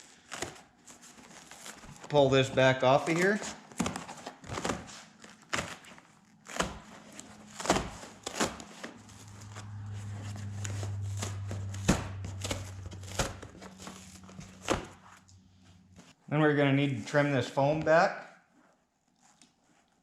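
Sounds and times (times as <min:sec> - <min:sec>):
low steady hum: 0:08.9 - 0:16.1.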